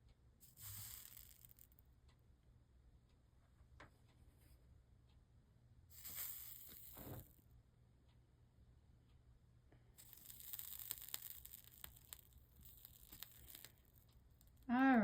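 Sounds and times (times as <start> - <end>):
soldering iron sizzling: 0.4 - 1.8, 5.9 - 7.3, 10.0 - 14.7.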